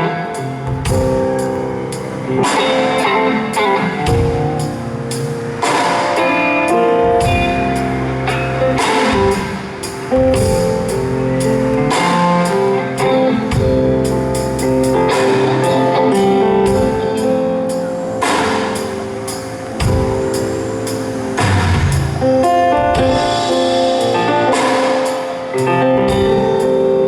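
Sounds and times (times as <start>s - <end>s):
guitar: 0.0s - 27.0s
bass: 0.4s - 2.6s, 6.7s - 24.8s
drum beat: 0.7s - 1.5s, 8.7s - 11.0s, 13.5s - 14.1s, 19.8s - 20.5s.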